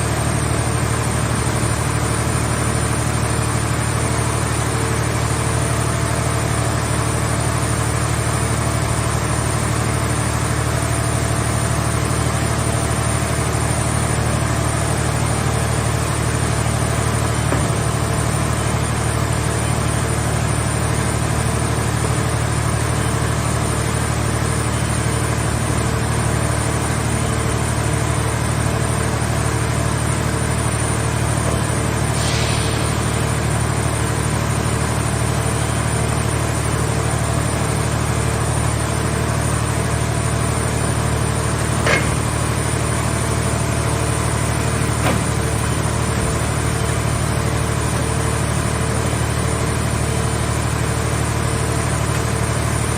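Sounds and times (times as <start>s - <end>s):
baler engine humming: 12.2s - 21.0s, 39.2s - 52.9s
sharp knocks: 17.5s - 18.1s, 41.8s - 42.4s
short hiss: 32.2s - 33.0s.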